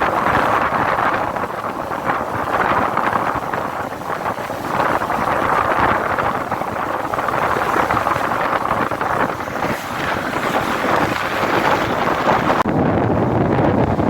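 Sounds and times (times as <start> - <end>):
wind buffeting microphone: 0.0 - 14.0
traffic noise: 5.2 - 12.7.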